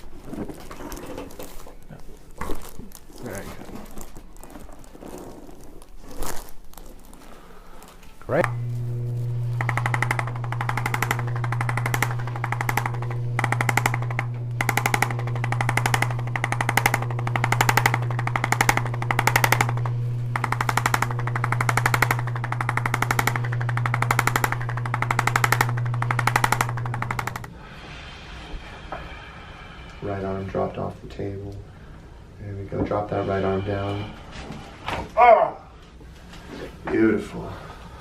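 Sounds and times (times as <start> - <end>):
percussion massager hammering: 8.4 - 27.5.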